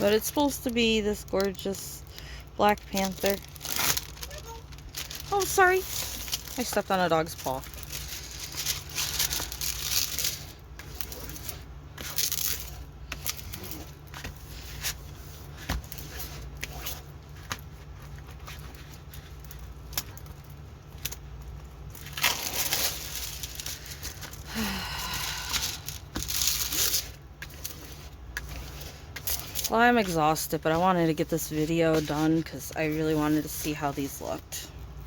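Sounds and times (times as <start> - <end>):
plastic packaging crinkling: 0.0 - 35.0
steady low hum: 0.0 - 35.0
packaging tearing: 2.7 - 14.0, 21.8 - 29.7.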